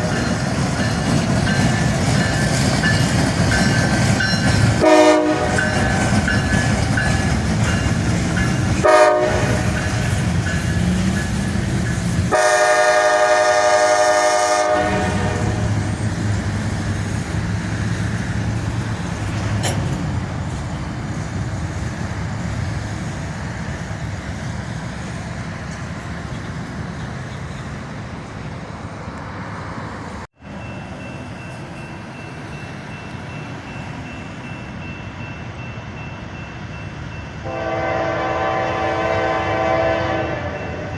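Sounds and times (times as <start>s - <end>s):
train rumble: 0.0s - 40.9s
train horn blasts: 4.8s - 6.2s, 8.8s - 10.0s, 12.3s - 15.9s, 37.4s - 40.9s.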